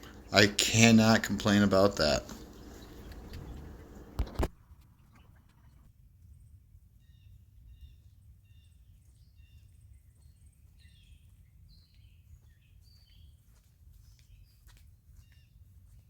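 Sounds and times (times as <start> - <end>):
steady low rumble: 0.0 - 6.0
faint birdsong: 0.0 - 16.0.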